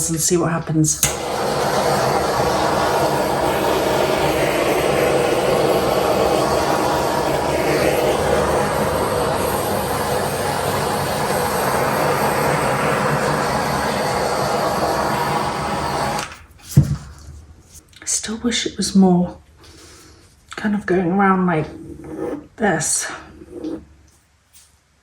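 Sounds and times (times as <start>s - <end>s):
hot-air blower running: 1.0s - 16.4s.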